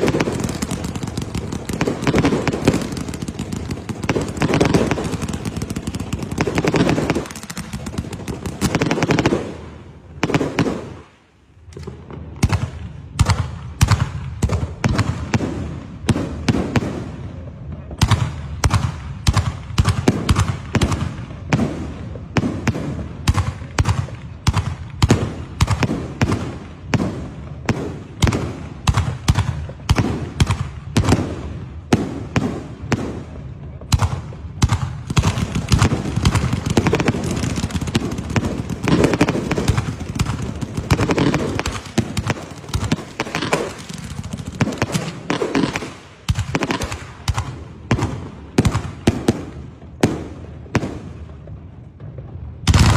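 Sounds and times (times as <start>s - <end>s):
fireworks crackling and banging: 0.0s - 52.9s.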